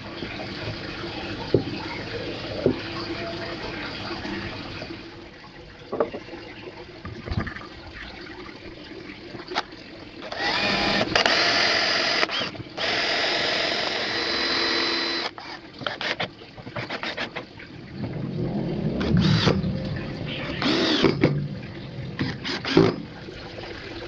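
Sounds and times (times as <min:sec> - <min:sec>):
power tool whining: 0:10.3 - 0:16.2, 0:20.6 - 0:21.2.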